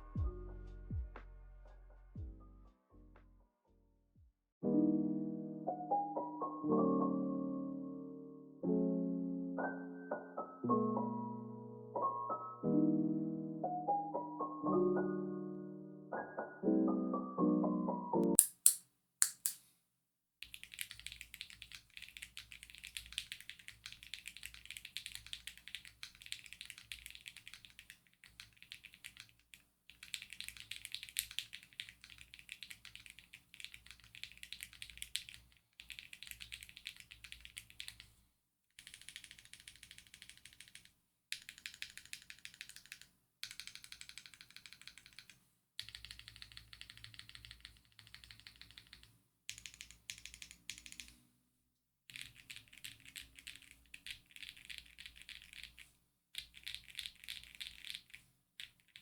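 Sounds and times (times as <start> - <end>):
mechanical keyboard typing: 20.4 - 38.1, 38.8 - 51.2, 52.1 - 55.8, 56.4 - 59.0.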